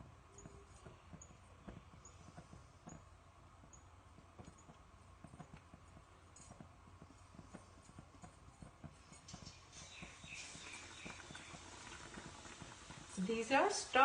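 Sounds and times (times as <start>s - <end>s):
fritters deep frying in oil: 9.4s - 14.0s.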